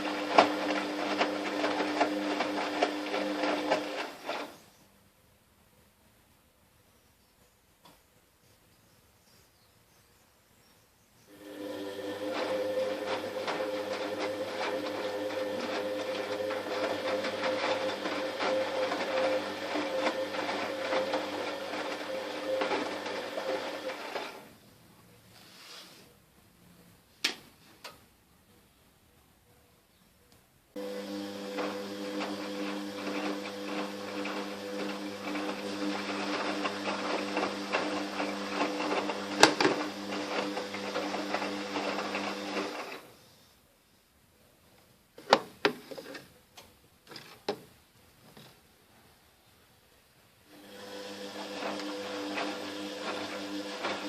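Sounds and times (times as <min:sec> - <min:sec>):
washing machine drum humming: 0:00.0 - 0:04.0, 0:11.6 - 0:24.0, 0:30.8 - 0:42.4.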